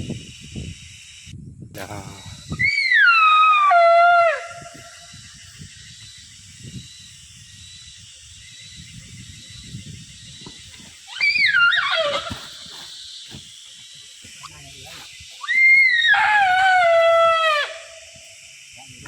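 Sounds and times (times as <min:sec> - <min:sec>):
animal calls: 0:01.8 - 0:05.3, 0:10.9 - 0:13.0, 0:15.4 - 0:18.2.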